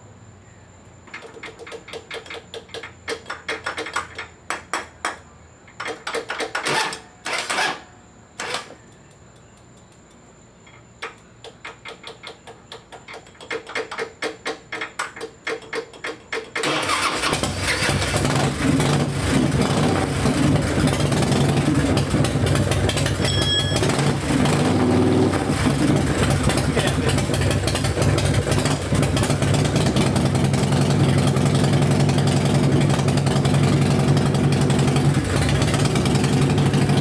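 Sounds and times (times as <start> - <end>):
motorcycle engine running: 16.8 - 37.0.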